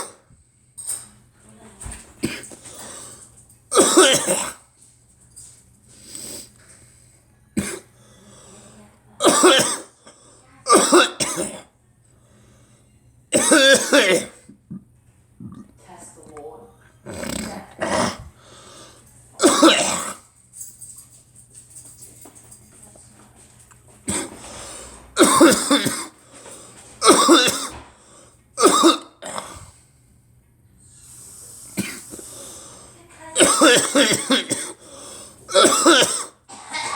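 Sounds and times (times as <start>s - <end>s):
person coughing: 2.2s - 2.6s, 3.7s - 4.6s, 7.6s - 7.9s, 9.2s - 10.0s, 10.7s - 11.7s, 13.4s - 14.8s, 19.4s - 20.2s, 24.1s - 24.5s, 25.2s - 26.2s, 27.0s - 27.9s, 28.6s - 29.7s, 31.8s - 32.3s, 33.4s - 34.9s, 35.5s - 36.9s.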